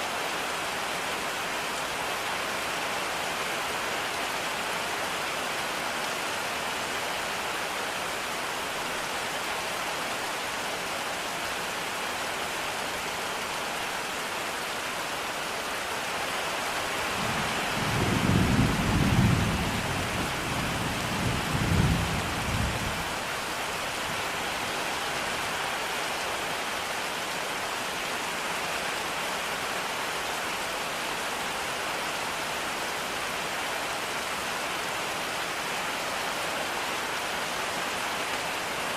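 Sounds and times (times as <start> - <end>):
steady rain: 0.0 - 38.9
low roll of thunder: 17.2 - 23.1.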